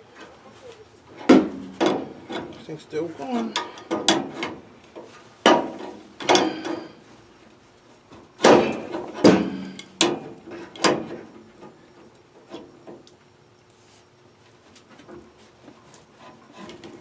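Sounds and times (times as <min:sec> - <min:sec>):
hand tools clanking on pipes: 0:01.3 - 0:04.5, 0:05.5 - 0:07.0, 0:08.5 - 0:11.1.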